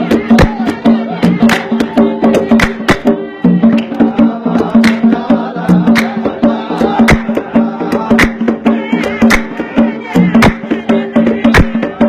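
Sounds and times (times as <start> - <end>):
hand drums striking a rhythm: 0.0 - 12.0.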